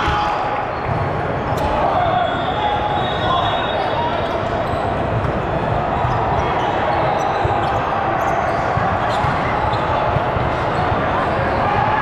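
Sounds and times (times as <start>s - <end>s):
din of gym hall: 0.0s - 12.0s
basketball bouncing on court: 5.0s - 6.4s, 7.0s - 10.8s
sneaker squeaks: 6.0s - 11.6s.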